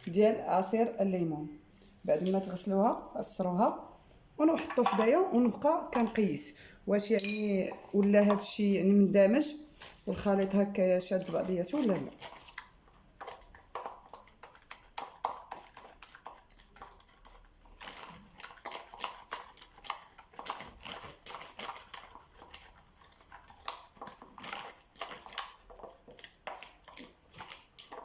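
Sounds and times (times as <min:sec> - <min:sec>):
spoon stirring sticky paste: 0:07.1 - 0:28.0.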